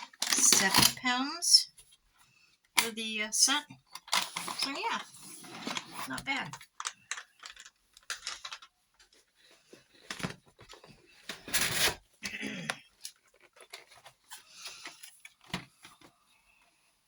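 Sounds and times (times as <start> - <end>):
packaging rustling and clicking: 3.9 - 12.1, 12.9 - 16.2.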